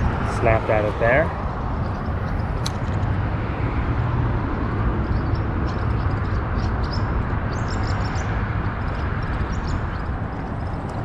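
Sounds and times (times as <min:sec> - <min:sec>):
highway traffic rumble: 0:00.0 - 0:11.0
small birds chirping: 0:05.0 - 0:11.0.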